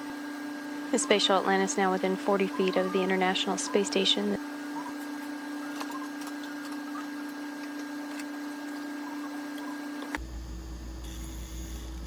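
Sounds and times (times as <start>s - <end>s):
electrical hum and hiss: 10.1s - 12.0s.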